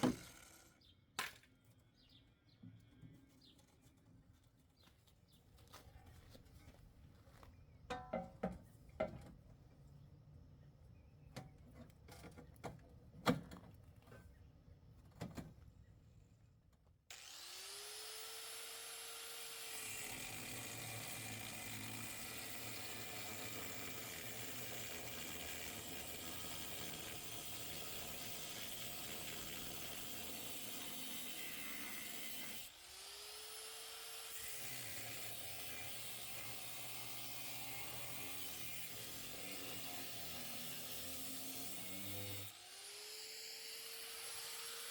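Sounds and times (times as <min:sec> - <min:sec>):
electric saw cutting sheet metal: 0:00.0 - 0:00.7, 0:17.1 - 0:44.9.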